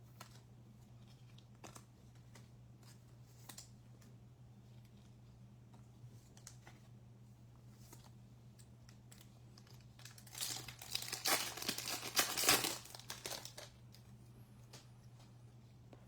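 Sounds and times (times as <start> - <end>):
wrapper tearing and crinkling: 10.0 - 13.7.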